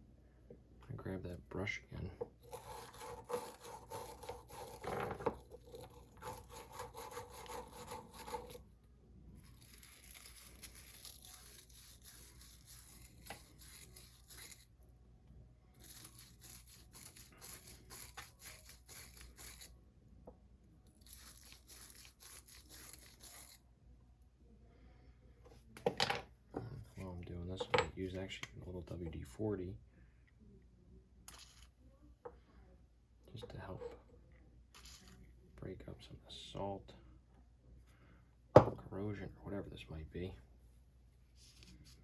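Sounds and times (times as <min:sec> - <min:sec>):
brush scrubbing metal: 0:02.4 - 0:08.6, 0:09.4 - 0:14.7, 0:15.8 - 0:19.7, 0:21.0 - 0:23.6.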